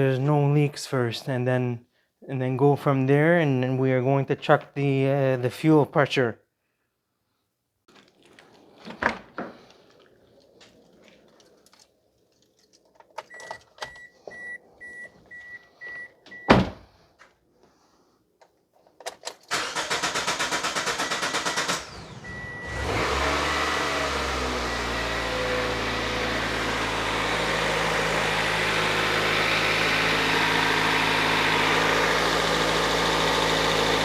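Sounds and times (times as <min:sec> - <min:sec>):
car engine cranking and idling: 0:07.9 - 0:16.4, 0:19.4 - 0:34.0.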